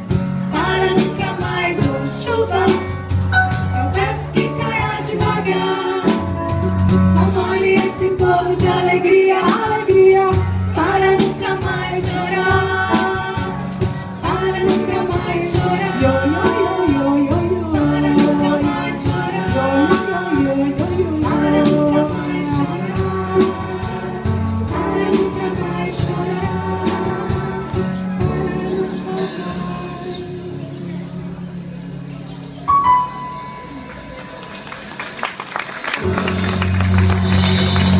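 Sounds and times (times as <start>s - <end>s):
piano: 0.0s - 37.9s
vocal group singing: 0.4s - 31.8s
drum and cymbal strikes: 1.0s - 7.9s.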